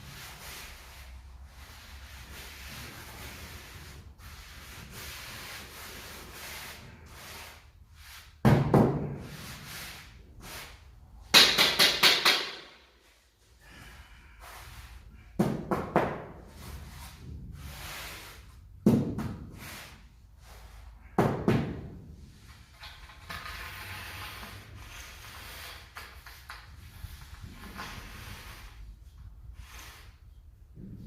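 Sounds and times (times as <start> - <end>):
tools scraping mortar: 22.7 - 28.8.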